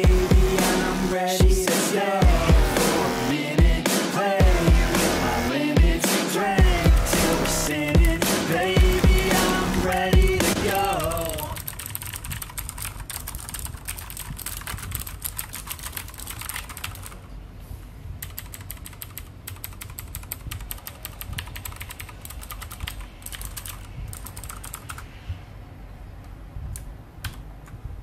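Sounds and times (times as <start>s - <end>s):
mechanical keyboard typing: 9.9s - 17.2s, 18.2s - 25.0s.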